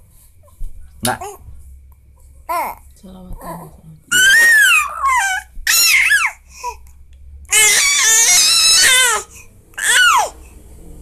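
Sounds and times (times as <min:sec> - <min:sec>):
baby crying: 0:04.1 - 0:06.8, 0:07.5 - 0:10.4.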